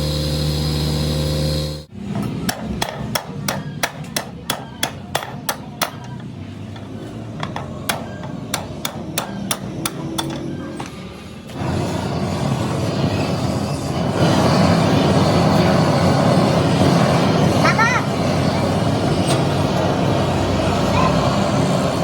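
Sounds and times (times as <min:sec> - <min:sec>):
machine hum: 0:00.0 - 0:02.3
hammer striking steel: 0:02.0 - 0:11.0.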